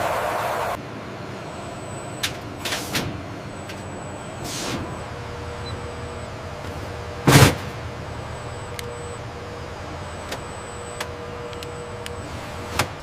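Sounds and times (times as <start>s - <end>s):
loud burst of noise: 0.0s - 0.8s
mechanical background hum: 0.0s - 13.0s.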